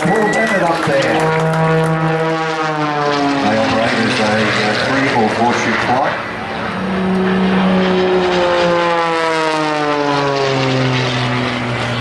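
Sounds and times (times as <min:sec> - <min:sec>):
propeller aircraft flying past: 0:00.0 - 0:12.0.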